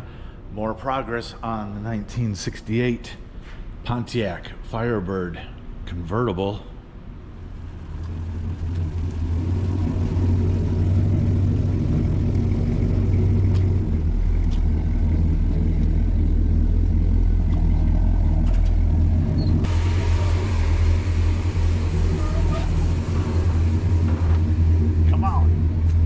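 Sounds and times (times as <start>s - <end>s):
vehicle engine rumbling: 6.8s - 26.0s
hiss: 19.7s - 23.8s.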